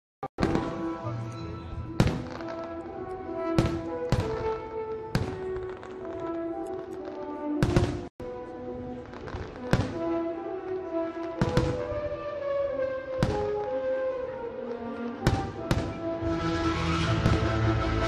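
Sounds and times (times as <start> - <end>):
music with sustained notes: 0.4 - 18.0
fireworks bursting: 1.9 - 8.1, 8.9 - 13.9, 15.2 - 18.0.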